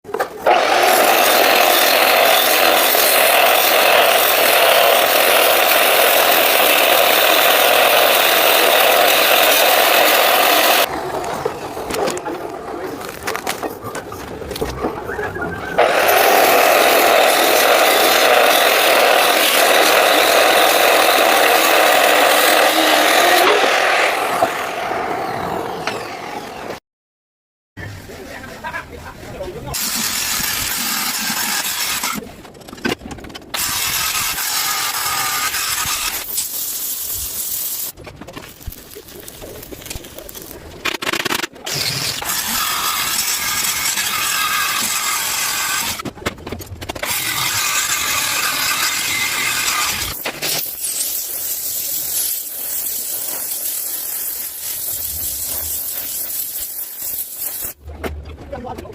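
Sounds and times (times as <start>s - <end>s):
power tool working metal: 0.4s - 10.9s, 15.8s - 26.6s, 29.8s - 32.2s, 33.6s - 37.9s, 41.7s - 46.0s, 47.0s - 57.8s
loud mechanical roar: 15.8s - 26.6s.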